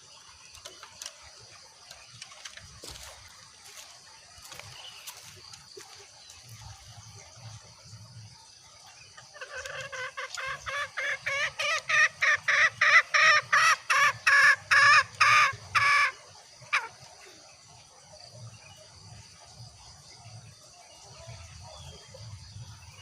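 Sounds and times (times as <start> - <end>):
junglefowl hen clucking: 9.2 - 17.0.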